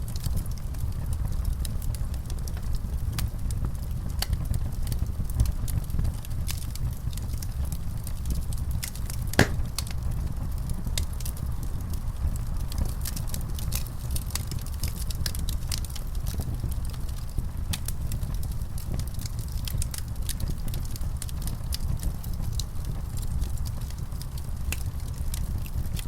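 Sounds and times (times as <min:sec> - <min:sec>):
low fire rumble: 0:00.0 - 0:26.0
wood fire crackling: 0:00.0 - 0:26.0
loud fire pop: 0:09.3 - 0:10.0.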